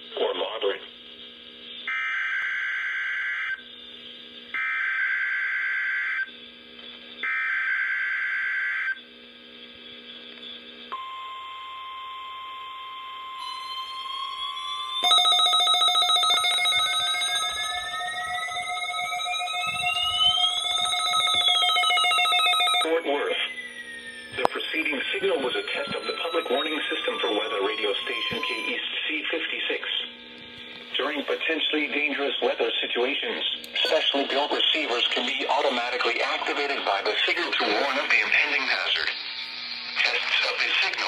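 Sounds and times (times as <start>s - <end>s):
steady alarm beep tone: 1.6s - 6.4s, 7.2s - 9.1s, 9.9s - 32.3s
siren-like rising tone: 13.4s - 31.0s
screechy data tones: 13.4s - 31.6s.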